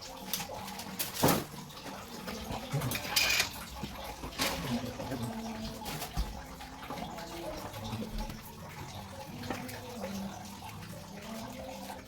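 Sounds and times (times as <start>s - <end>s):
water running: 0.0s - 12.0s.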